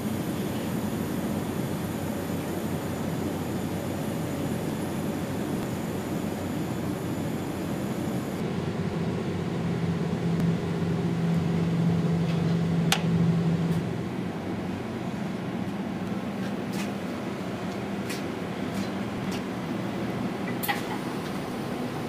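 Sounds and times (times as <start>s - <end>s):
milling machine noise: 0.0s - 8.4s.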